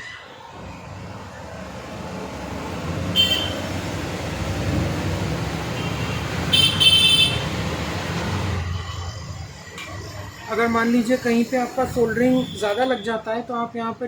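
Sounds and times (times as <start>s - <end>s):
vehicle rumbling past: 0.6s - 6.6s, 7.4s - 12.1s.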